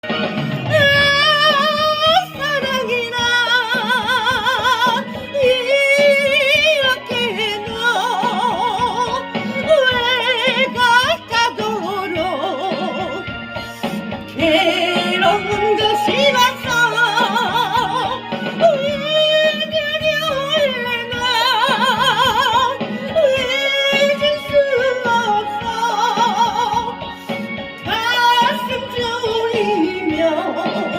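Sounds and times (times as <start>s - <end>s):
person singing slow melody: 0.0s - 2.4s.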